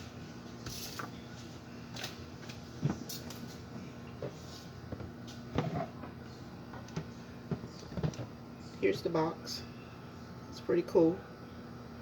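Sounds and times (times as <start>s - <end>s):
objects knocking and bumping: 6.8s - 8.3s.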